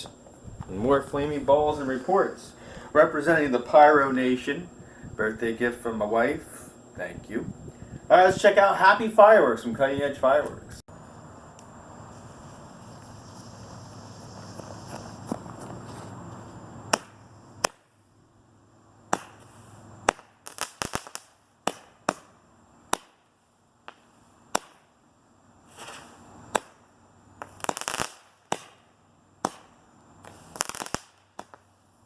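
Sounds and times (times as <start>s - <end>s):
sharp firework bangs: 16.9s - 17.9s, 19.1s - 22.3s, 23.9s - 24.9s, 27.4s - 31.6s
firework cake hissing: 19.2s - 22.3s, 25.6s - 26.8s, 27.4s - 31.9s.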